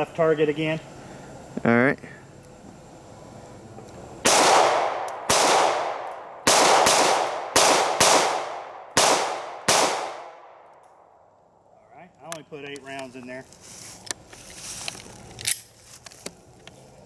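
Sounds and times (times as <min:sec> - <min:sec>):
pistol shots: 0:04.2 - 0:10.6.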